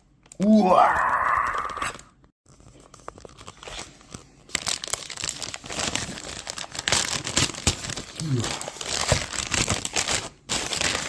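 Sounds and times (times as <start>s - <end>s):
packaging crackling and rustling: 1.9s - 11.0s.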